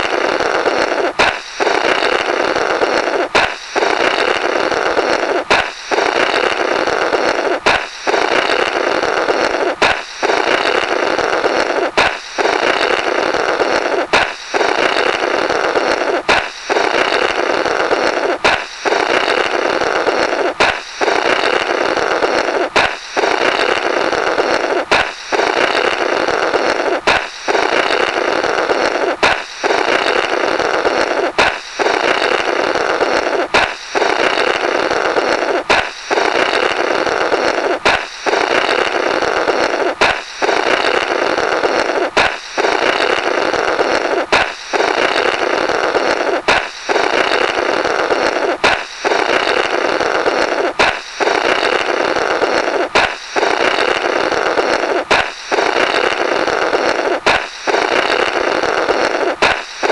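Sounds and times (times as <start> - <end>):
blowing through burst balloon: 0.0 - 59.9
balloon pop: 1.0 - 2.3, 2.9 - 4.4, 5.2 - 6.6, 7.2 - 8.6, 9.5 - 17.5, 18.1 - 19.5, 20.2 - 21.7, 22.4 - 23.9, 24.7 - 26.0, 26.7 - 28.3, 29.0 - 30.3, 31.0 - 34.5, 35.5 - 36.7, 37.4 - 38.9, 39.6 - 43.2, 44.1 - 47.5, 48.2 - 49.8, 50.6 - 52.0, 52.7 - 54.2, 55.0 - 58.4, 59.2 - 59.9.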